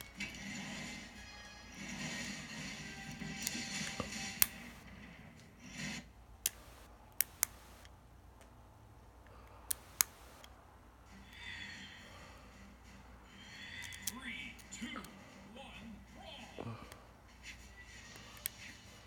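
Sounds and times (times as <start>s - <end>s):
faint metal scraping: 0.0s - 6.9s.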